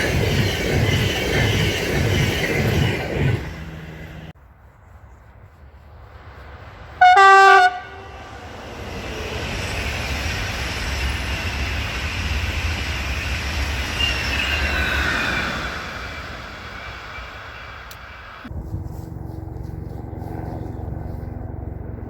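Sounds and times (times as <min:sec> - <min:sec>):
train passing rumble: 0:00.0 - 0:22.0
train horn blast: 0:07.0 - 0:08.5.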